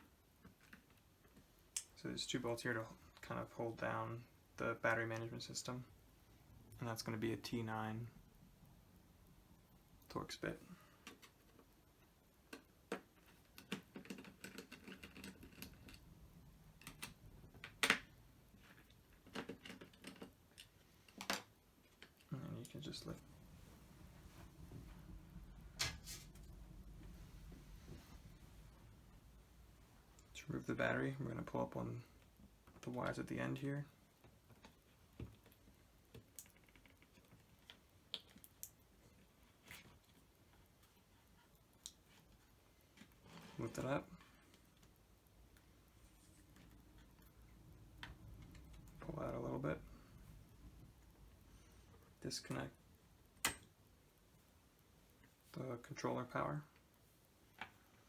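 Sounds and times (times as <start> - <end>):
clicks and taps of handling wires: 16.8 - 22.8.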